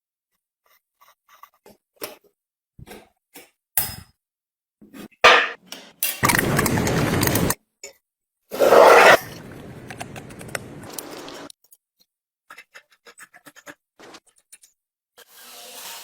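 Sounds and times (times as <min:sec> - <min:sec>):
loud rush: 0:06.2 - 0:07.6.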